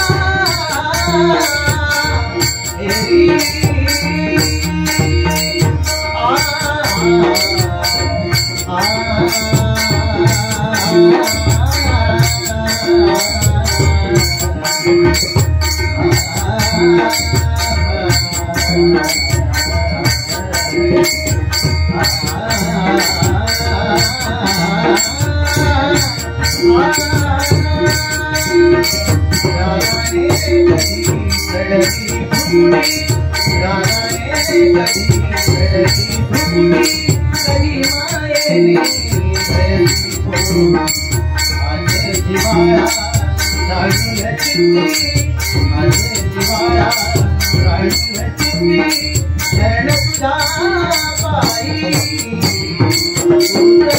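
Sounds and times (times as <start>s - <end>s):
hand cymbals jingling: 0.0s - 53.9s
hand drums: 0.0s - 53.9s.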